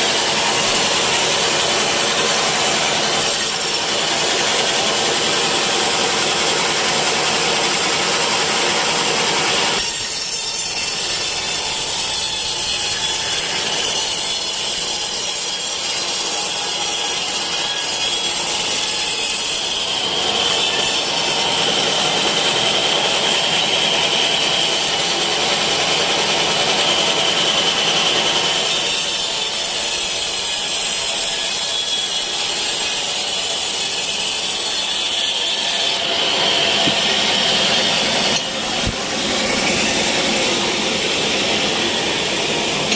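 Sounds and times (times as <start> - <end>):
saw cutting wood: 0.0 - 42.9
steady high whine: 36.0 - 42.9.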